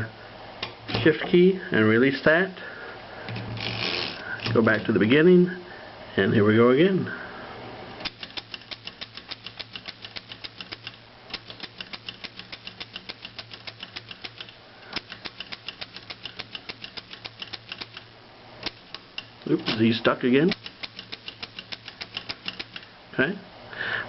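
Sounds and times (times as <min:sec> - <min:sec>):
typewriter typing: 0:08.0 - 0:22.9.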